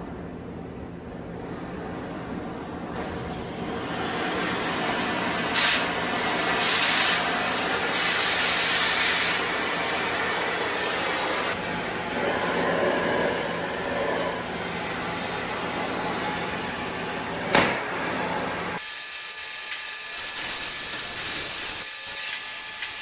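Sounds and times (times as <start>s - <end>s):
cutting torch hissing: 3.3s - 15.6s, 18.8s - 23.0s.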